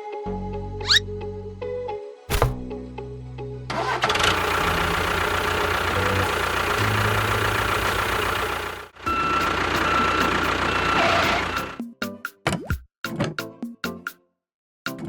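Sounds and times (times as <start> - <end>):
engine chugging: 3.7 - 11.8.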